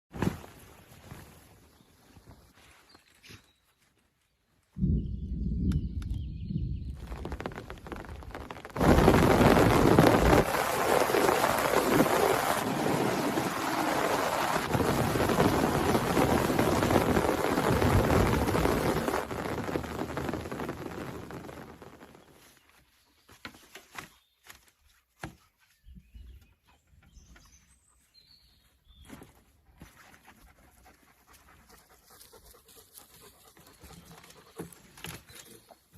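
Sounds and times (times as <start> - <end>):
low thunder rumbling: 4.8 - 21.4
heavy rain pouring: 7.0 - 22.2.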